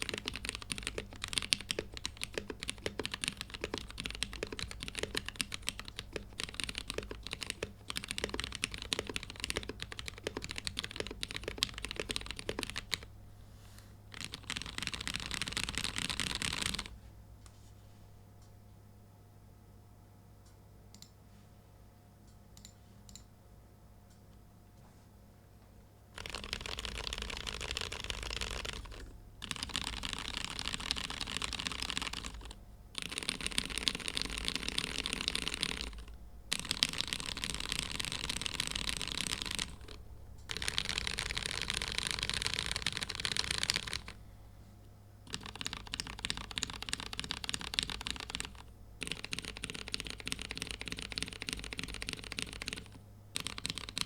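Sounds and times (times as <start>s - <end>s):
fast typing on mechanical keyboard: 0.0s - 13.1s, 14.1s - 16.9s, 26.2s - 44.2s, 45.3s - 54.0s.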